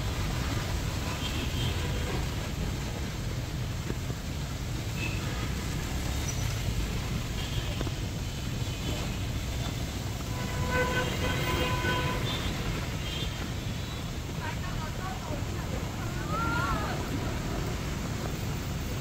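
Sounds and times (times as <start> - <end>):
heavy rain: 0.0 - 19.0
street traffic rumble: 0.0 - 19.0
vehicle horn toots: 10.2 - 13.9.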